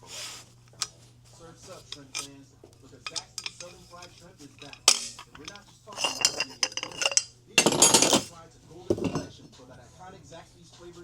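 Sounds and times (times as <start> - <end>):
metal tools clinking and clattering: 1.8 - 2.3, 3.0 - 8.3, 8.9 - 9.4.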